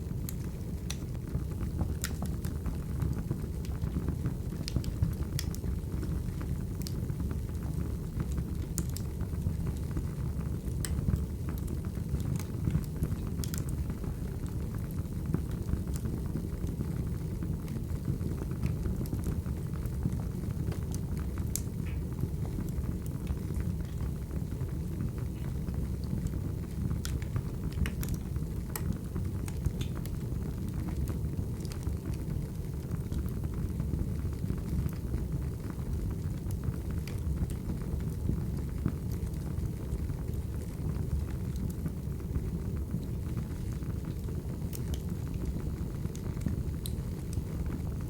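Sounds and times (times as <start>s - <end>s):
fire pops and crackles: 0.0s - 48.0s
wood fire rumbling: 0.0s - 48.0s.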